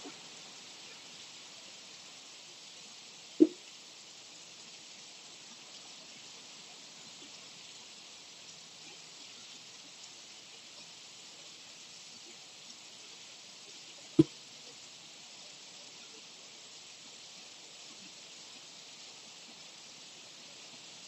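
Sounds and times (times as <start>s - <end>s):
light rain hiss: 0.0s - 21.0s
faint drip ticks: 3.3s - 3.9s, 11.9s - 16.2s.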